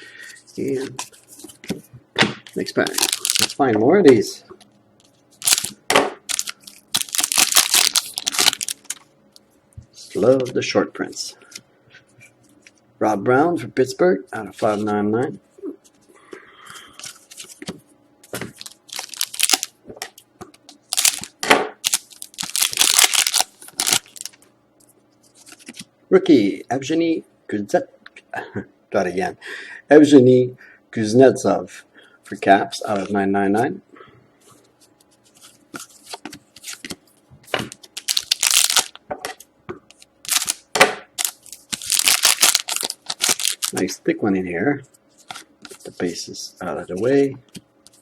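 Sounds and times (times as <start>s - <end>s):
plastic packaging crinkling: 2.8s - 3.6s, 5.4s - 9.1s, 18.4s - 19.8s, 20.7s - 24.4s, 37.6s - 39.0s, 40.0s - 43.9s.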